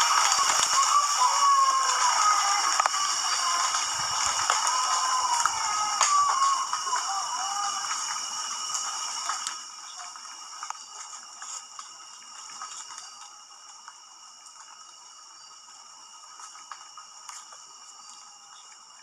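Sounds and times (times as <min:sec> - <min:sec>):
faint clicks: 0:00.0 - 0:15.0
insects chirring: 0:00.0 - 0:19.0.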